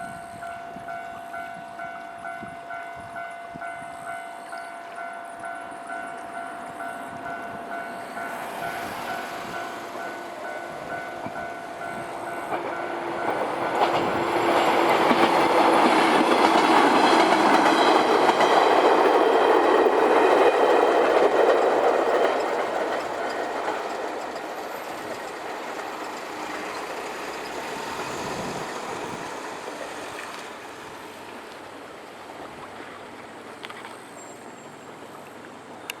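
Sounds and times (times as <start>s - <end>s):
level crossing warning bell: 0.0s - 26.3s
train wheels rumbling and clattering: 7.2s - 31.4s.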